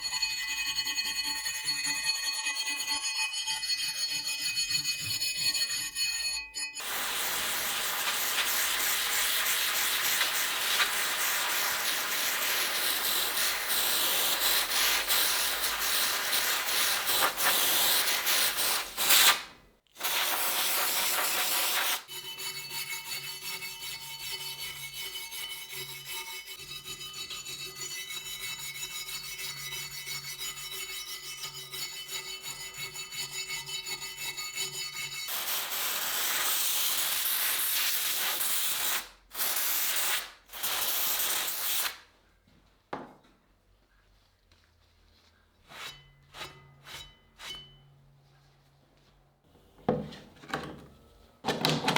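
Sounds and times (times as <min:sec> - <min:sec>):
fast rhythmic rubbing: 0:06.9 - 0:19.0.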